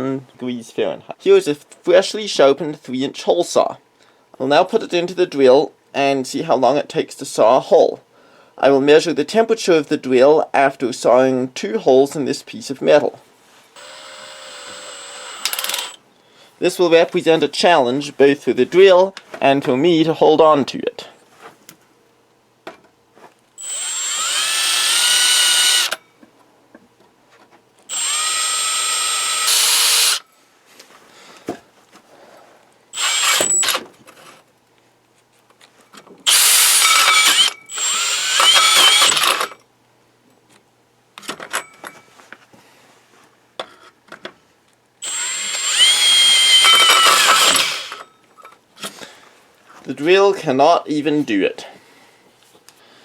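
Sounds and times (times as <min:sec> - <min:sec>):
drill hole saw cutting metal: 0:13.8 - 0:16.0, 0:23.6 - 0:26.0, 0:27.9 - 0:30.2, 0:33.0 - 0:33.8, 0:36.3 - 0:39.6, 0:45.0 - 0:48.0.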